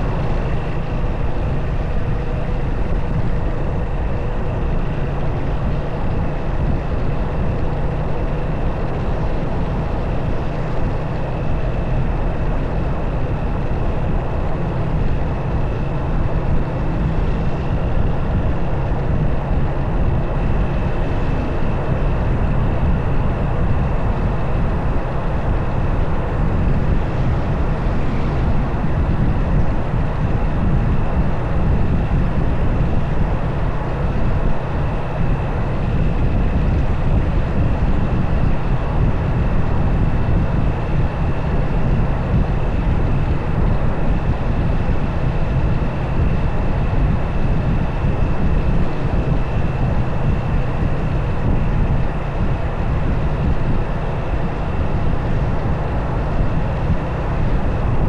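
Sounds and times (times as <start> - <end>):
wind buffeting microphone: 0.0 - 58.0.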